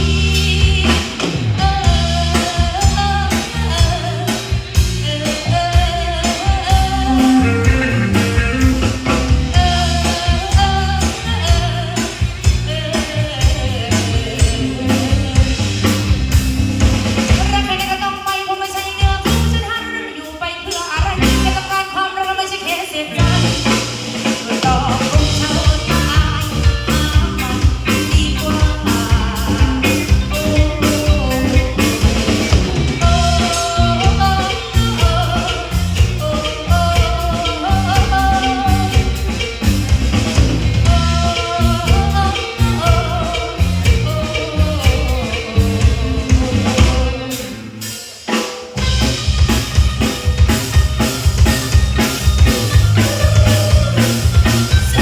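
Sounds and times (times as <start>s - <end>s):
live band playing: 0.0s - 55.0s.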